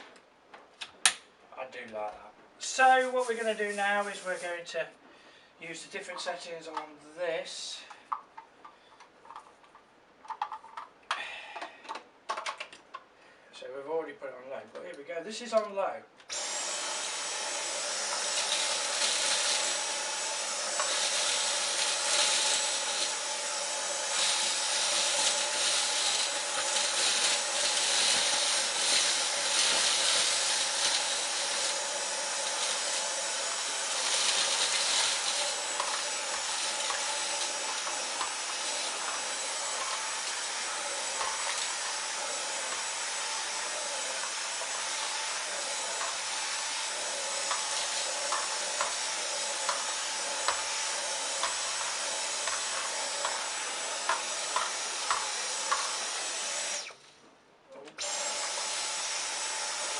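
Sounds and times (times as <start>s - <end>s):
cordless vacuum running: 16.3s - 57.0s, 58.0s - 59.9s.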